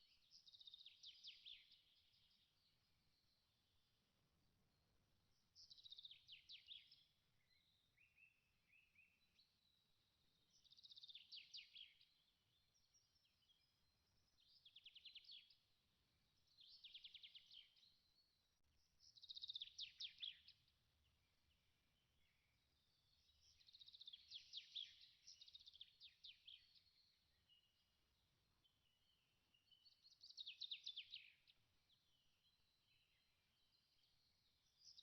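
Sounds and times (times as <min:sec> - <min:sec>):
faint bird song trills: 0:00.0 - 0:35.0.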